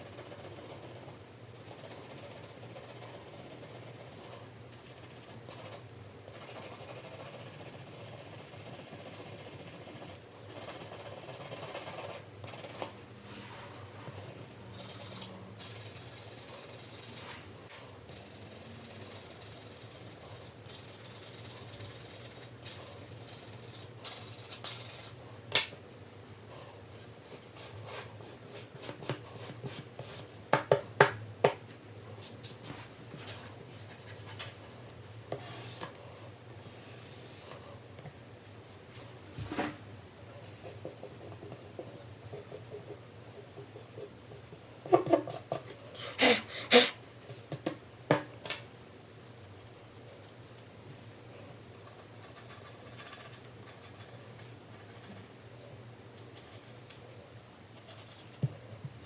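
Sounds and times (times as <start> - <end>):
sharp pencil ticks: 14.8 - 17.2, 18.1 - 25.1, 49.3 - 50.6
pencil shading on paper: 18.1 - 25.1.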